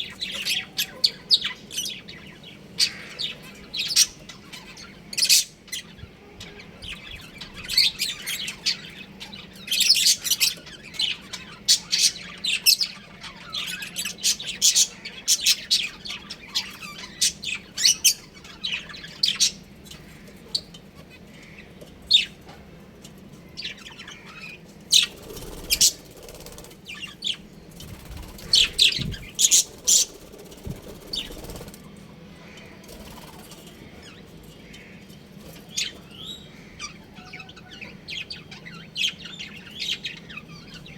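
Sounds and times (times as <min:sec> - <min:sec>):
budgerigars chirping: 0:00.0 - 0:22.4, 0:23.3 - 0:40.9.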